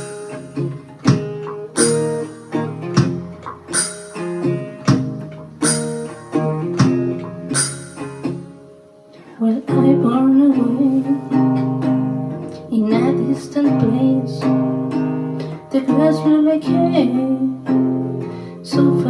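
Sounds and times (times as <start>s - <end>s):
acoustic guitar strumming: 0.0s - 19.0s
person singing: 9.4s - 11.7s, 12.4s - 14.6s, 15.4s - 17.7s, 18.5s - 19.0s.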